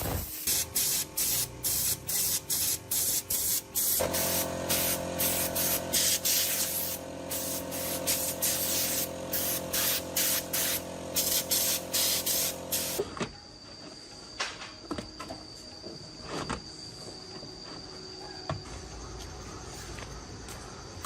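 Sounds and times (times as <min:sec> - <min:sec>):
compressor motor hum: 0:00.0 - 0:13.0
spray gun hissing bursts: 0:00.0 - 0:13.0.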